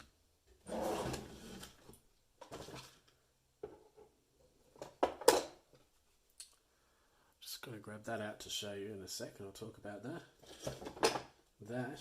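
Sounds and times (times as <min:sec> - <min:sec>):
rustling scrape: 0:00.6 - 0:03.0.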